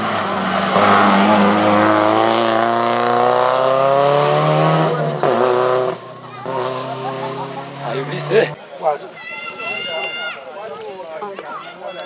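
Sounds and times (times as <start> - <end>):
rally car engine passing: 0.0 - 8.6.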